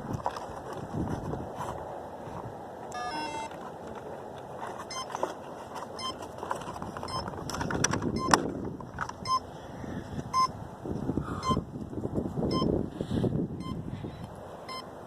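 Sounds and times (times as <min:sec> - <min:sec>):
rough outdoor noise: 0:00.0 - 0:15.0
short electronic beeps: 0:02.9 - 0:03.5, 0:04.9 - 0:05.2, 0:06.0 - 0:06.2, 0:07.1 - 0:07.3, 0:08.1 - 0:08.4, 0:09.2 - 0:09.5, 0:10.3 - 0:10.6, 0:11.4 - 0:11.6, 0:12.5 - 0:12.8, 0:13.6 - 0:13.8, 0:14.7 - 0:14.9.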